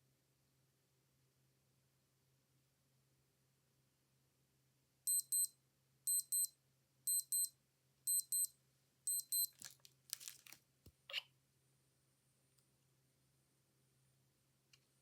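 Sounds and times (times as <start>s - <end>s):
digital watch alarm beeping: 5.1s - 5.5s, 6.1s - 6.5s, 7.1s - 7.5s, 8.1s - 8.5s, 9.1s - 9.5s
rustling handling noise: 9.3s - 11.0s.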